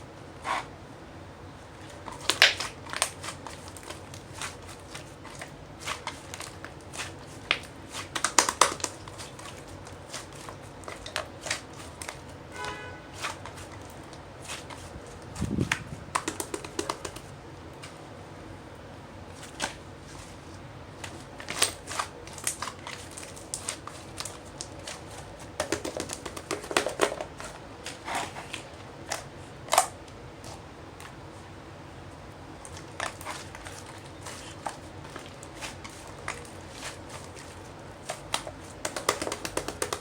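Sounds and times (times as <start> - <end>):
slime clicking: 38.3 - 40.0.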